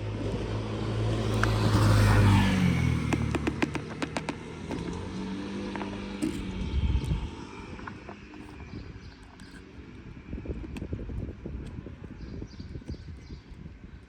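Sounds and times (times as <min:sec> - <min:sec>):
passing car engine hum: 0:00.0 - 0:08.3.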